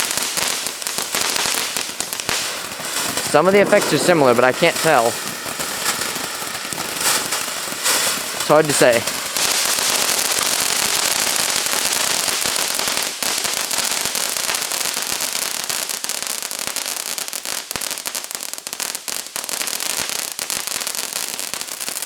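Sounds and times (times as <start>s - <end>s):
crackling pops: 0.0s - 11.6s
firework fountain hissing: 0.0s - 22.0s.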